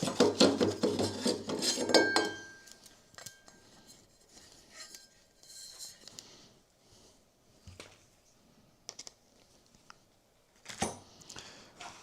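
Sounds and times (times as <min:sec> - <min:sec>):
hard parts clinking and scraping: 0:00.8 - 0:06.1.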